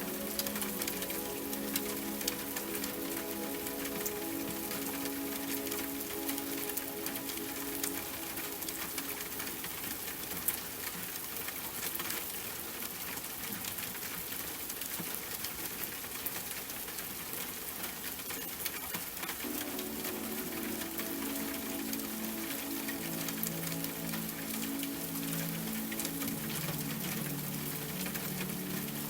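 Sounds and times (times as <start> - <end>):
soft sustained music tones: 0.0 - 11.7, 19.4 - 29.0
steady rain falling: 0.0 - 29.0.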